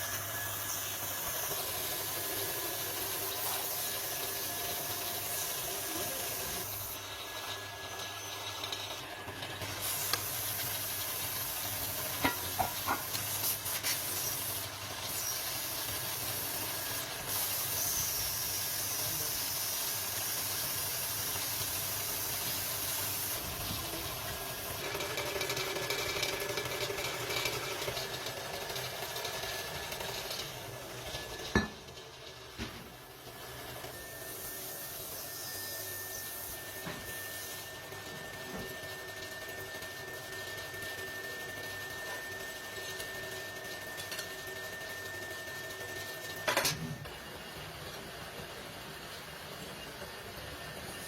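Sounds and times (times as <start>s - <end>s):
factory machinery hissing: 0.0s - 40.2s.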